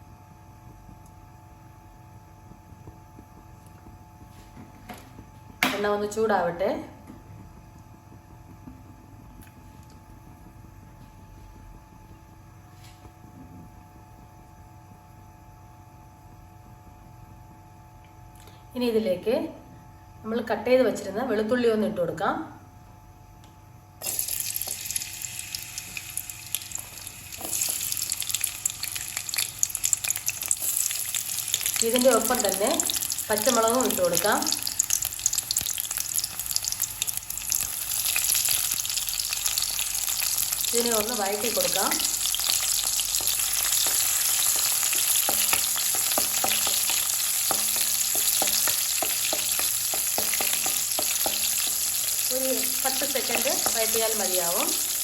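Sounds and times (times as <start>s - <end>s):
garlic sizzling in hot oil: 24.0s - 55.0s
spatula knocking against pan: 43.2s - 51.9s.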